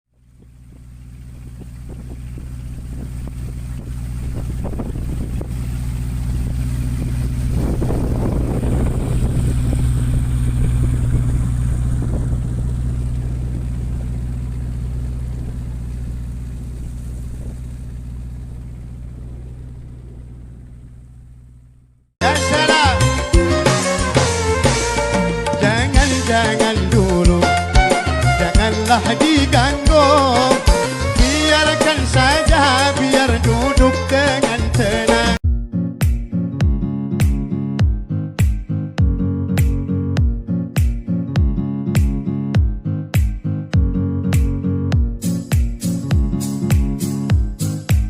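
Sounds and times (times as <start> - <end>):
motorboat engine humming: 0.1 - 35.4
water noise: 0.3 - 21.7
wind noise: 0.4 - 21.1.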